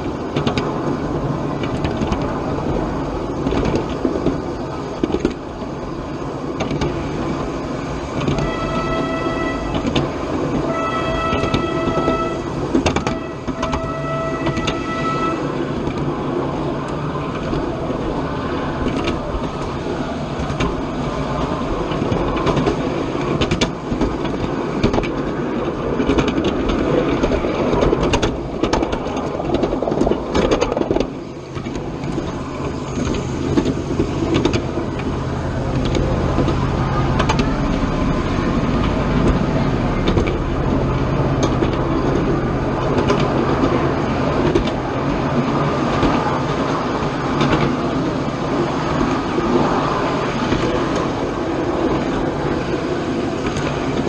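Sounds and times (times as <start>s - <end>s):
miniature train rumbling: 0.0s - 54.0s
wheels clicking on rails: 0.0s - 54.0s
steady low hum: 31.2s - 45.5s.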